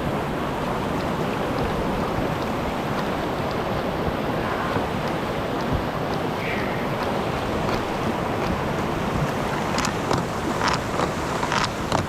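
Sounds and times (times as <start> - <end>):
river rushing over rocks: 0.0 - 12.0.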